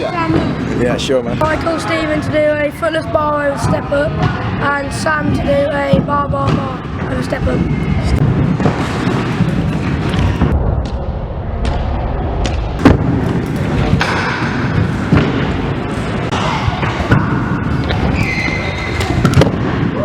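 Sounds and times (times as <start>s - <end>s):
scooter wheels rolling on ramps: 7.4s - 11.0s.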